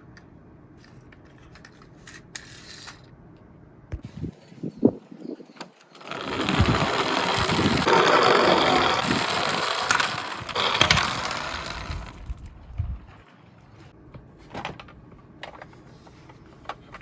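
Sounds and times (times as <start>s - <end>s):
toy cars knocking clicks: 5.8s - 12.2s
toy cars rattling down a slope: 5.8s - 12.4s.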